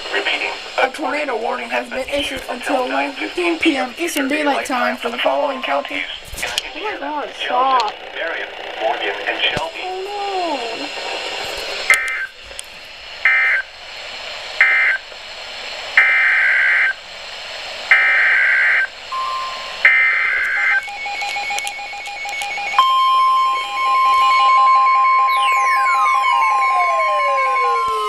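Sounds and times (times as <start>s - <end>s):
steady warning alert tone: 2.6s - 6.2s, 17.9s - 28.0s
pulsed beeping tone: 5.1s - 6.1s, 19.1s - 28.0s
two-tone digital screeches: 5.2s - 6.0s, 18.0s - 28.0s
falling tone sweeps: 19.2s - 28.0s.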